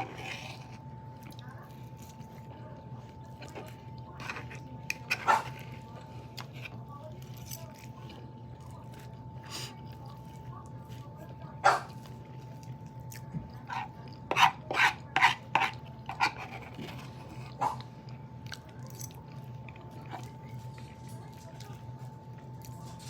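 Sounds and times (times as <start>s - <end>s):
dog barking: 5.2s - 5.6s, 11.6s - 12.0s, 17.5s - 17.8s.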